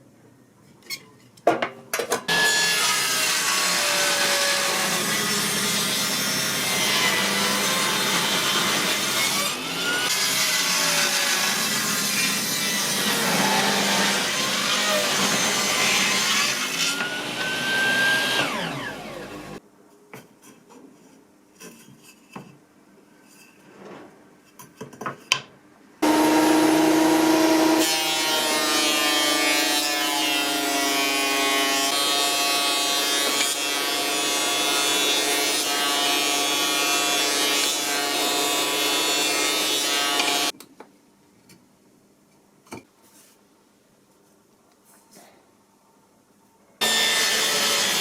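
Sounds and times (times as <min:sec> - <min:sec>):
power saw cutting wood: 0:02.3 - 0:19.6, 0:26.0 - 0:40.5, 0:46.8 - 0:48.0.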